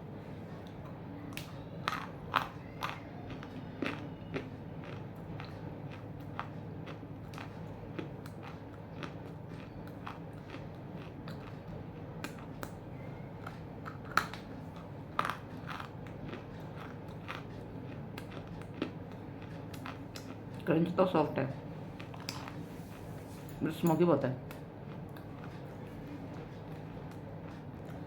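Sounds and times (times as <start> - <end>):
biting and chewing crunches: 1.4 - 12.8, 13.4 - 20.6.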